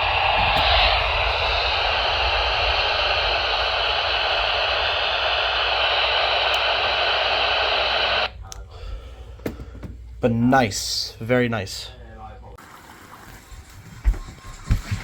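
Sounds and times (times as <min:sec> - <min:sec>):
radio static hiss: 0:00.0 - 0:08.4.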